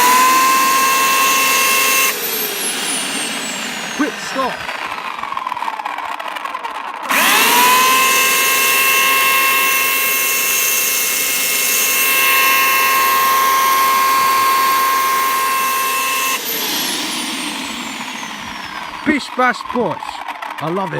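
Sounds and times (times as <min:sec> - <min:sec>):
electric chainsaw motor whining: 0:00.0 - 0:20.9.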